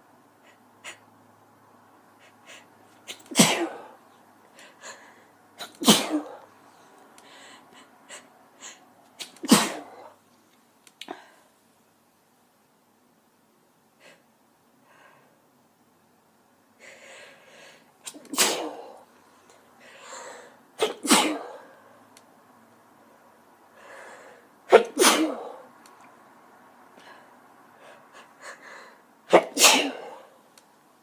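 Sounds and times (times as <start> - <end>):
woman sneezing: 3.1 - 3.9, 5.6 - 6.4, 9.2 - 10.1, 18.1 - 19.0, 20.8 - 21.6, 24.7 - 25.6, 29.3 - 30.3
short in-breath: 6.8 - 8.8, 23.7 - 24.5.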